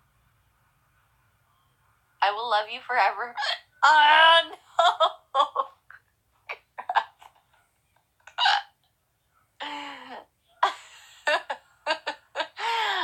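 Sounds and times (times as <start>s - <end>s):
woman hiccuping: 8.3s - 8.8s.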